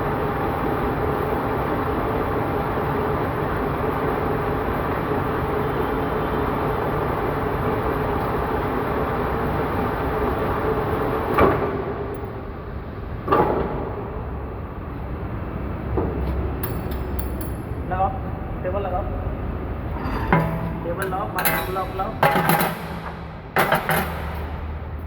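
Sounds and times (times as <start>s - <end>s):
sharp metallic clank: 20.0s - 24.7s.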